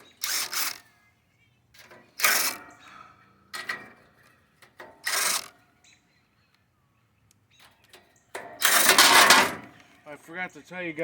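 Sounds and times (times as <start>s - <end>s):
small metal rattles: 1.7s - 5.7s, 7.5s - 9.7s.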